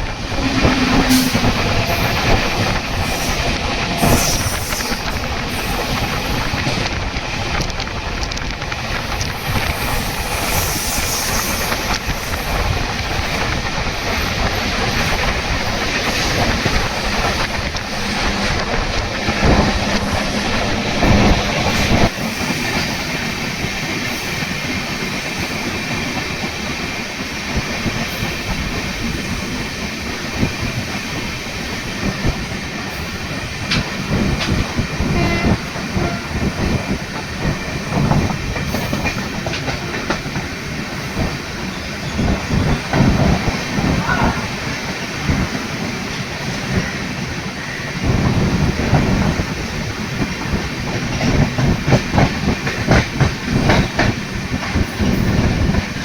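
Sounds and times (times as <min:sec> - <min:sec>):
loud train knocks: 0:00.0 - 0:56.0
train rumbling: 0:00.0 - 0:56.0.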